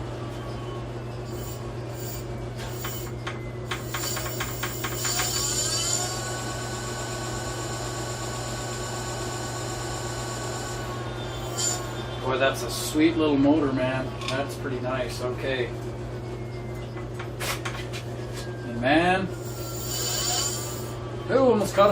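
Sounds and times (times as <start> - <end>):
electric motor whine: 1.3 - 12.2, 19.4 - 21.0
motor clicks: 2.7 - 5.6.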